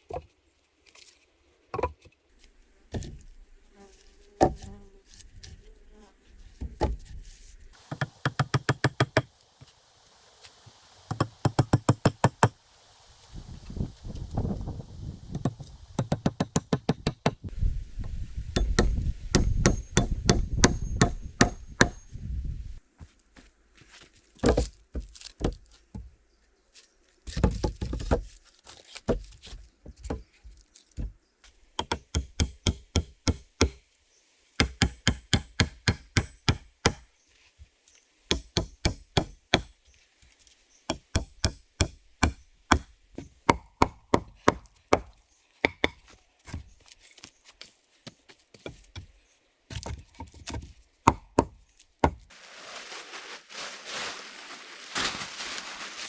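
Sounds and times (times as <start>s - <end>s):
knife chopping on wooden board: 7.9s - 9.3s, 11.1s - 12.6s, 15.4s - 17.5s, 18.6s - 22.0s, 49.8s - 52.2s.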